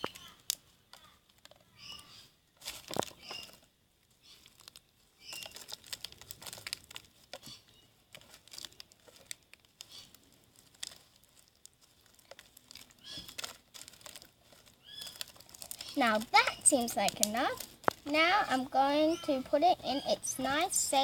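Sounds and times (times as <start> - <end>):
sequins crinkling in slime: 0.0 - 21.0.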